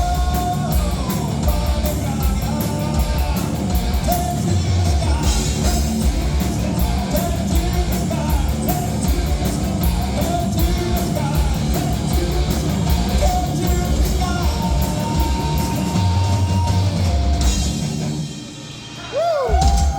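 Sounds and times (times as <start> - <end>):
rock band playing live: 0.0 - 19.9
person yelling vocals: 19.0 - 19.9.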